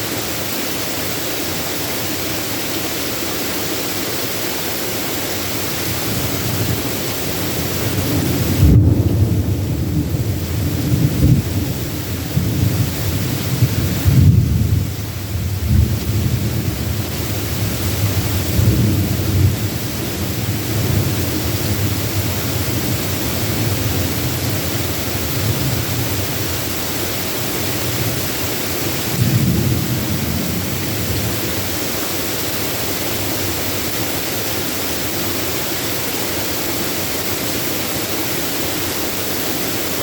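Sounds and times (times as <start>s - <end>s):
heavy rain hissing: 0.0s - 40.0s
rolling thunder: 6.0s - 26.9s, 27.7s - 31.9s.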